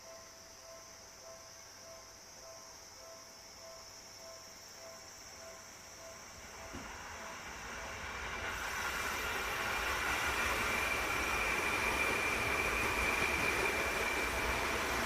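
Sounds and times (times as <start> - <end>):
train wheels rumbling on rail: 6.3 - 15.0.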